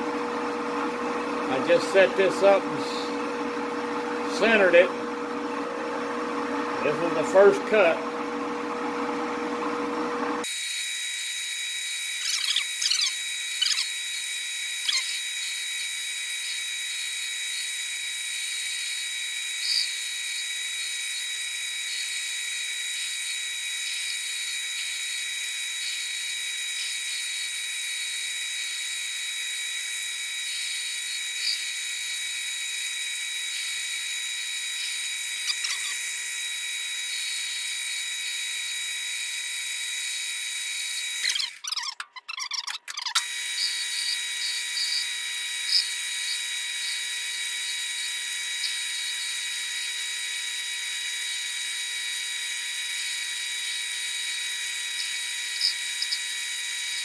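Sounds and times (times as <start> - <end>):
cutter squealing: 0.0 - 5.1, 6.8 - 8.2, 10.4 - 57.0
metal lathe whining: 0.0 - 41.9.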